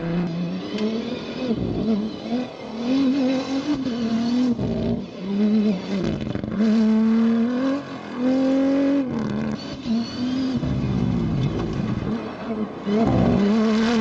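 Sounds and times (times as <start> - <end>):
engine revving hard: 12.9 - 14.0.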